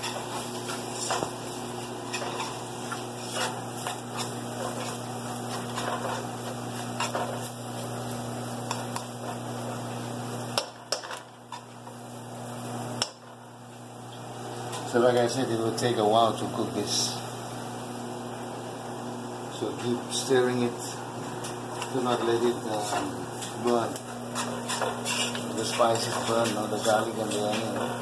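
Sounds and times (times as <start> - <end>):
onions frying in a pot: 0.0 - 28.0
spoon scraping a pot: 24.3 - 28.0.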